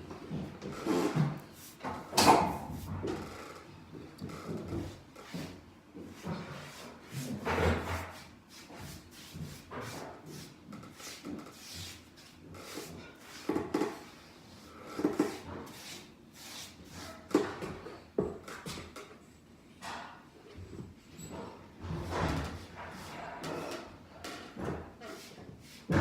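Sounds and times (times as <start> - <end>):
hand tools scraping plaster: 0.6 - 3.1, 21.9 - 26.0.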